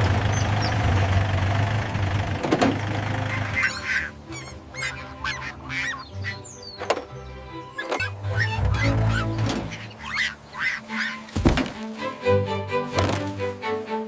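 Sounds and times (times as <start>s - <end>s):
background music: 2.8s - 14.0s
duck quacks: 3.2s - 6.4s, 7.8s - 11.4s.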